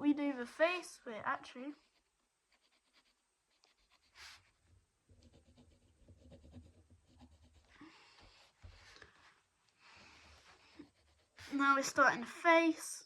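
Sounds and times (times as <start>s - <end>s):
pencil scratching on paper: 1.7s - 9.0s, 10.2s - 12.0s.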